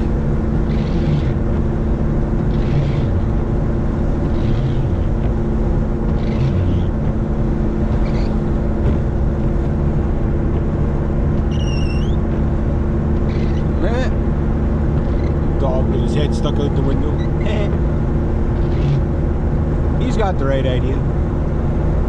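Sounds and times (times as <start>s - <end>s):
rising squeak: 0.0s - 1.4s, 4.2s - 5.2s, 6.1s - 7.0s, 7.6s - 8.8s, 11.4s - 12.4s, 13.2s - 14.2s, 15.0s - 17.8s, 18.5s - 19.1s
engine and road noise in cabin: 0.0s - 22.0s.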